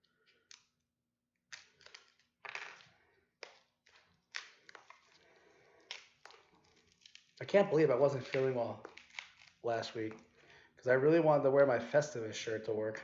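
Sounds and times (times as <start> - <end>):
plastic packaging crinkling: 3.9 - 10.4.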